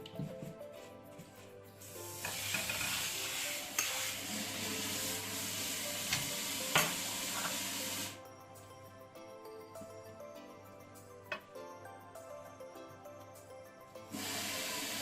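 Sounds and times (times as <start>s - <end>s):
food sizzling in frying pan: 1.8s - 8.2s, 14.1s - 15.0s.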